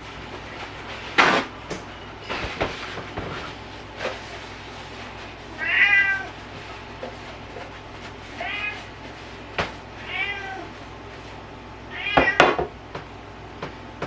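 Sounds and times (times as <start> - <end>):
cat meowing: 5.6 - 6.4, 8.4 - 8.9, 10.0 - 10.7, 11.9 - 12.5.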